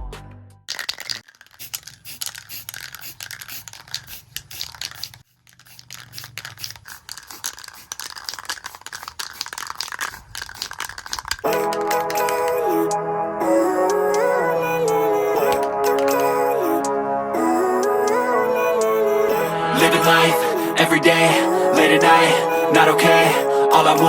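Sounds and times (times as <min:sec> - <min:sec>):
crackling handling noise: 0:00.7 - 0:12.4.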